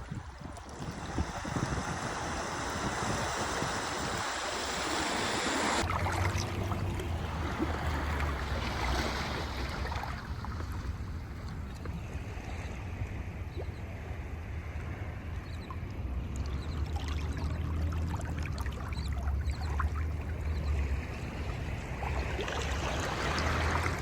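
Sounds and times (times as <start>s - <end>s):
wind buffeting the microphone: 0.0s - 5.9s
low wind rumble: 0.0s - 24.0s
sea waves washing: 0.0s - 24.0s.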